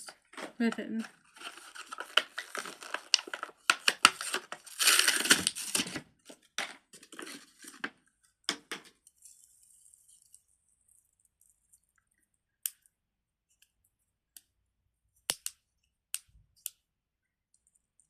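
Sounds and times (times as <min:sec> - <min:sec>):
plastic packaging crinkling and tearing: 0:00.2 - 0:08.0.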